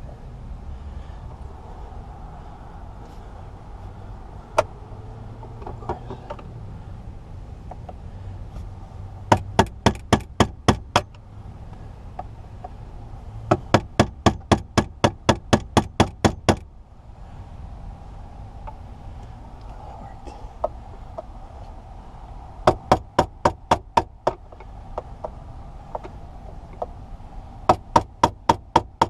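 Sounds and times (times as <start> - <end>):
hammer tapping on metal: 9.3 - 11.1.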